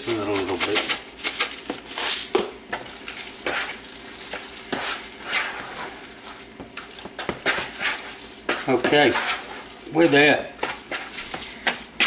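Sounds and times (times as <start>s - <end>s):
wet squelching of meat mixing: 2.7s - 12.0s.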